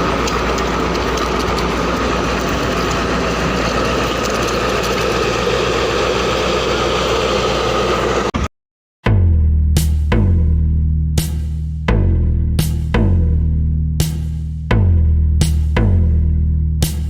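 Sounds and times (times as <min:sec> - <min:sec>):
diesel engine idling: 0:00.0 - 0:08.4.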